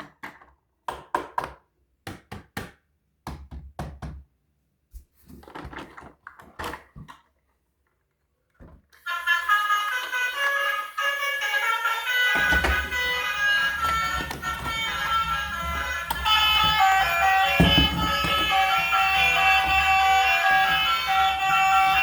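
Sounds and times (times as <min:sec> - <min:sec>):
music: 0:09.0 - 0:22.0
handling noise: 0:12.2 - 0:22.0.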